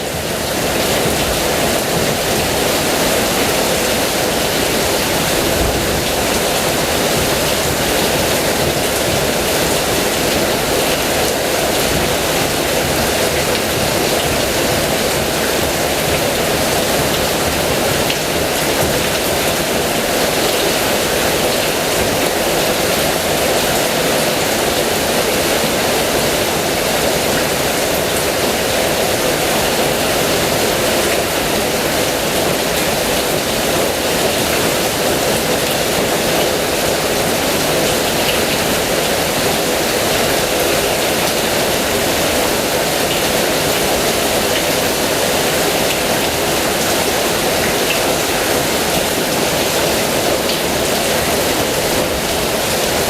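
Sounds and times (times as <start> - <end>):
heavy rain falling: 0.0 - 53.0.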